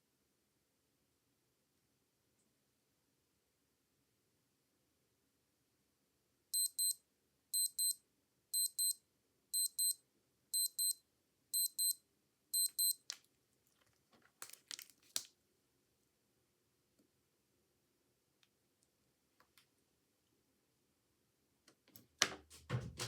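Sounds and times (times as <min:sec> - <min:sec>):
wristwatch alarm double beeps: 0:06.6 - 0:07.0, 0:07.6 - 0:08.0, 0:08.6 - 0:09.0, 0:09.6 - 0:10.0, 0:10.6 - 0:11.0, 0:11.6 - 0:12.0, 0:12.6 - 0:13.0.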